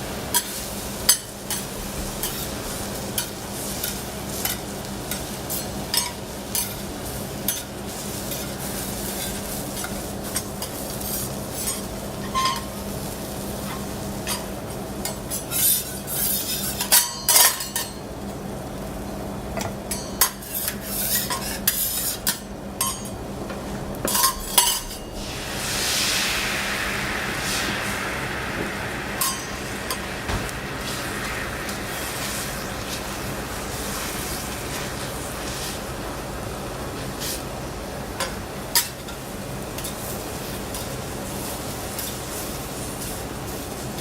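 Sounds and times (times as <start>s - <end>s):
omelette sizzling in a pan: 0.0s - 23.1s, 24.0s - 44.0s
utensils scraping a pan: 15.3s - 17.6s, 19.9s - 22.4s
low hum: 23.9s - 34.6s.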